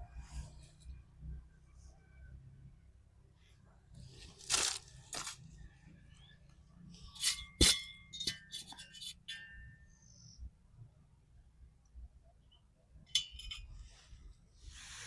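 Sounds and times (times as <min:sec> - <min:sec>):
cookware and utensils clattering: 0:13.1 - 0:13.7.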